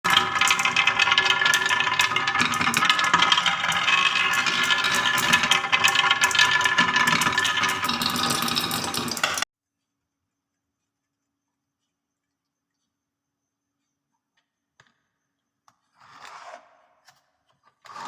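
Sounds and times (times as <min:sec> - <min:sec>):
marbles rolling and clattering: 0:00.0 - 0:09.5.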